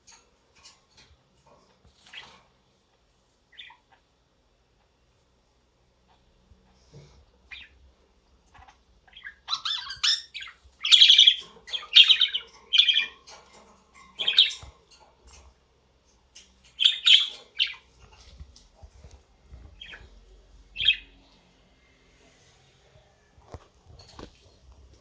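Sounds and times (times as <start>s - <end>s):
budgerigar chirping and squawking: 3.5s - 4.0s, 7.5s - 7.7s, 8.5s - 13.2s, 14.2s - 14.7s, 16.8s - 17.9s, 19.8s - 20.1s, 20.8s - 21.1s.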